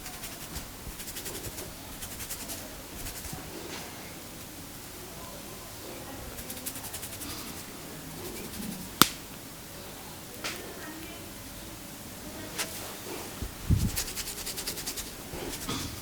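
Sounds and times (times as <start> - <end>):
small crackling clicks: 9.0 - 9.2
sharp crack: 9.0 - 9.3.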